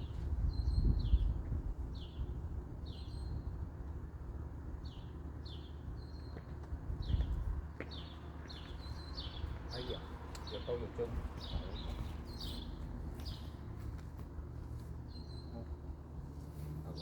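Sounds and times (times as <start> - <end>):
small bird chirping: 4.8 - 13.6, 15.1 - 15.8.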